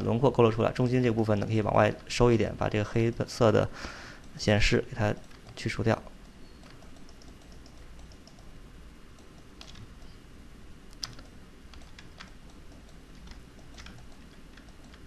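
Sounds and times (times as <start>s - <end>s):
faint low hum: 0.0s - 15.0s
computer keyboard clicks: 5.1s - 8.5s, 9.2s - 10.2s, 10.9s - 15.0s.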